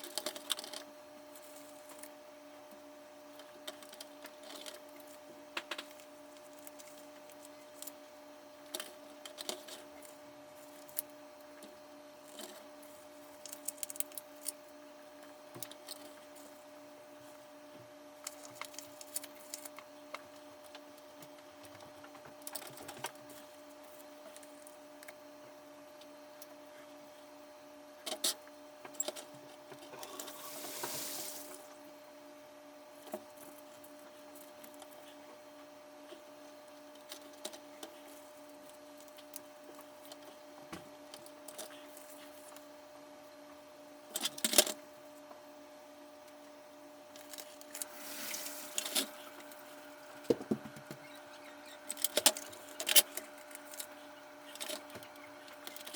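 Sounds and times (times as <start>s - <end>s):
steady electrical hum: 0.0s - 55.9s.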